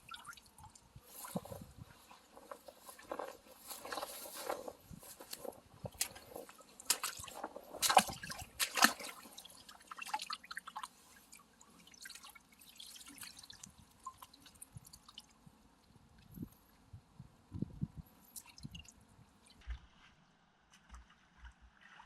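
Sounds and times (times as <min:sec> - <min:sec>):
water dripping and splashing: 0:00.0 - 0:01.5, 0:02.5 - 0:15.4, 0:18.2 - 0:19.7.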